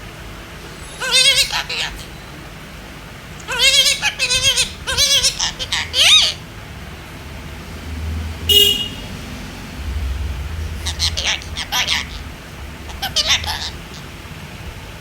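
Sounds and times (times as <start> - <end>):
parrot quavering calls: 0.6 - 2.5, 3.4 - 6.4, 10.7 - 12.3, 12.9 - 14.1
parrot harsh squawk: 0.7 - 2.3, 3.4 - 6.4, 10.8 - 12.2, 12.9 - 14.0.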